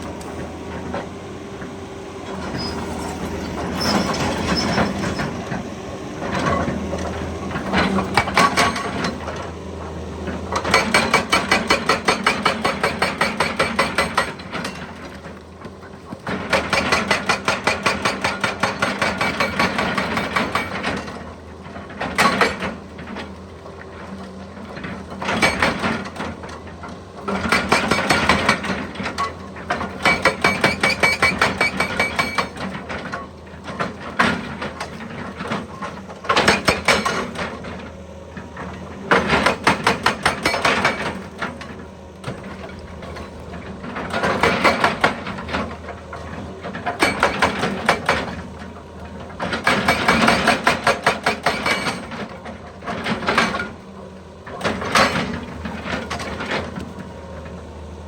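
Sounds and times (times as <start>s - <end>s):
diesel engine running: 0.0s - 19.1s
hydraulic hammer pounding rock: 6.2s - 9.5s, 10.2s - 23.3s, 23.9s - 53.8s, 54.4s - 57.1s.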